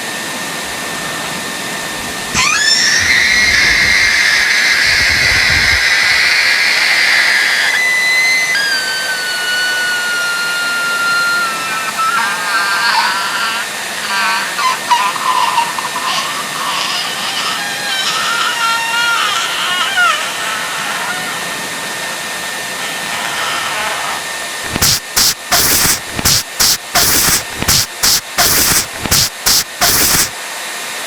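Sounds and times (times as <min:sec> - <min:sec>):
bird screeching: 0:02.3 - 0:26.0
bird whistle falling in pitch: 0:02.4 - 0:12.7.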